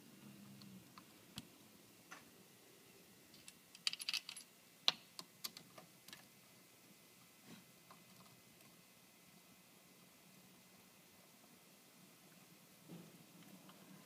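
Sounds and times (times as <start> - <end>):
small metal parts clicking: 3.3 - 6.2.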